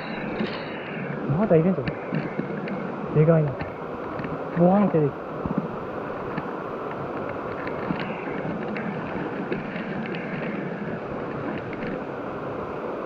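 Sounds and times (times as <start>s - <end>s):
stream flowing over rocks: 0.0s - 13.0s
faint ticks: 6.3s - 12.0s.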